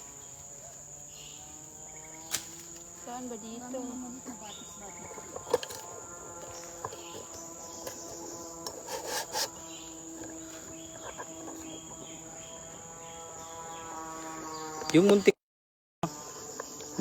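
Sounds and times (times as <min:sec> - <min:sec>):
insects droning: 0:00.0 - 0:15.4, 0:16.0 - 0:17.0
handling knocks and rustles: 0:05.0 - 0:12.2.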